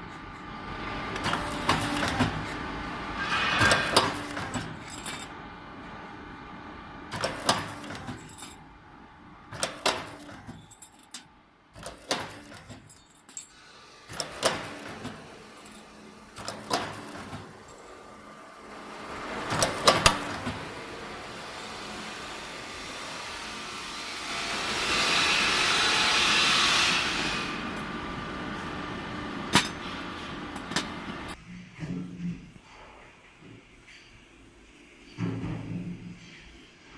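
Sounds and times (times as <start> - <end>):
machine rushing noise: 18.0 - 30.6.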